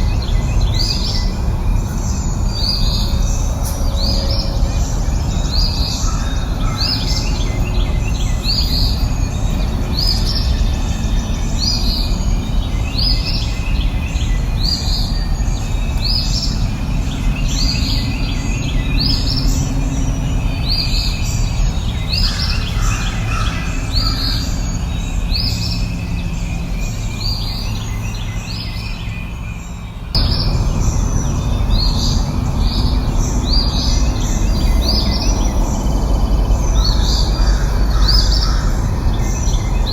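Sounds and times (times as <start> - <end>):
songbird chirping: 0.0 - 39.9
low rushing background: 30.0 - 39.9.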